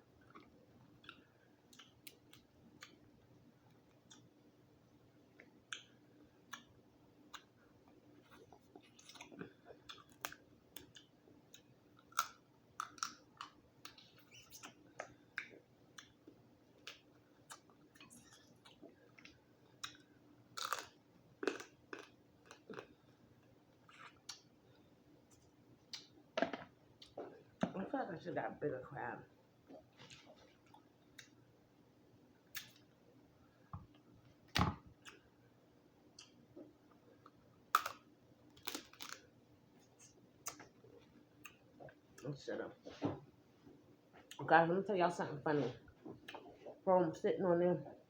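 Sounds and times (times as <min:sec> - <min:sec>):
chewing and mouth sounds: 0:07.3 - 0:23.2.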